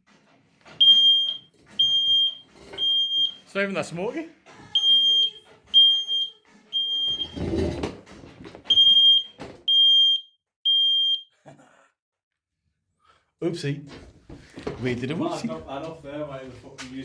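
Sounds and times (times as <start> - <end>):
smoke alarm beeping: 0.8 - 3.5, 4.8 - 7.4, 8.7 - 11.3.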